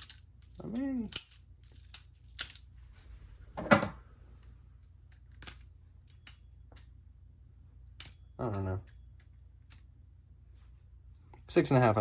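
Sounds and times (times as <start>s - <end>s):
knife handles clacking: 0.0s - 2.7s.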